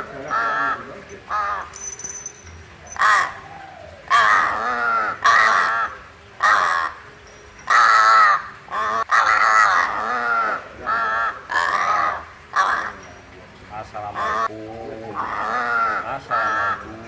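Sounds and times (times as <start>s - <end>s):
crow cawing: 0.2s - 1.7s, 4.1s - 7.0s, 7.7s - 13.0s, 14.1s - 14.5s, 15.1s - 17.0s.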